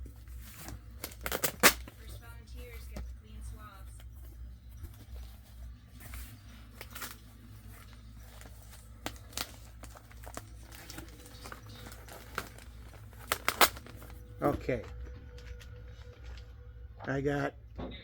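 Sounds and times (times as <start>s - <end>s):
packaging crinkling and tearing: 0.0s - 2.2s, 5.2s - 16.5s
low steady hum: 0.0s - 18.0s.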